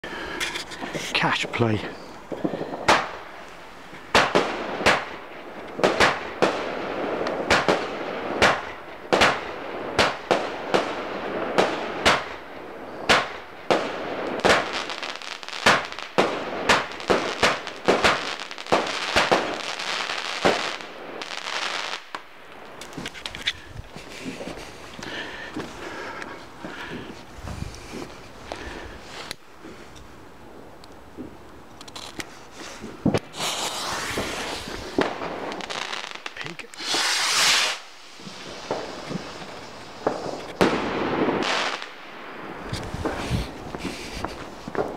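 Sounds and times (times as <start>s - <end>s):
firework crackling: 0.0s - 44.9s
firework bangs: 0.8s - 23.2s, 32.6s - 44.9s.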